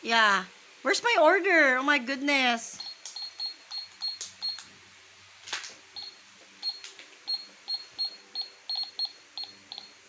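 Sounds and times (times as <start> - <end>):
toy cash register beeping: 2.8 - 4.6, 6.0 - 10.0.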